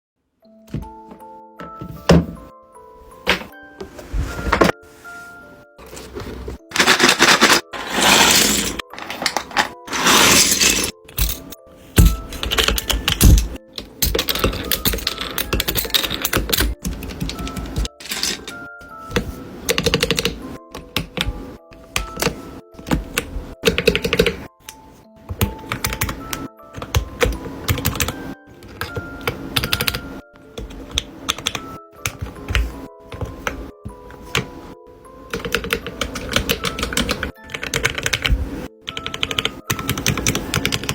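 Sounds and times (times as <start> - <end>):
background music: 0.3 - 40.9
mechanical keyboard typing: 6.7 - 18.6, 19.7 - 21.3, 21.9 - 24.4, 25.4 - 33.6, 35.3 - 40.9.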